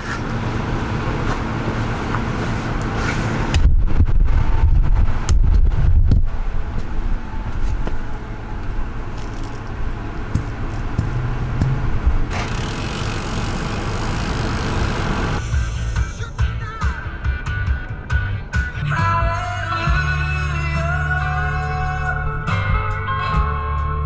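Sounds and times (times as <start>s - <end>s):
vehicle rumbling on the road: 0.0s - 24.0s.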